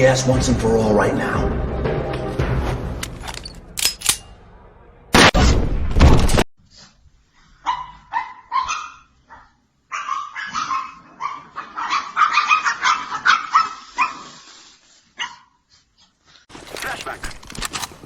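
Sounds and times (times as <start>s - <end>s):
loud blast: 4.4s - 6.4s
dog barking: 7.6s - 14.4s, 15.2s - 15.6s.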